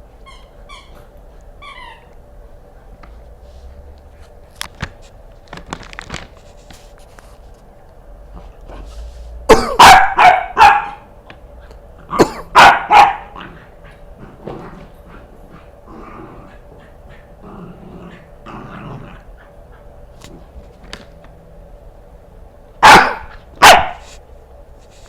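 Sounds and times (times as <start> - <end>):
puppy barking: 9.5 - 11.1, 12.1 - 13.7, 22.8 - 24.1.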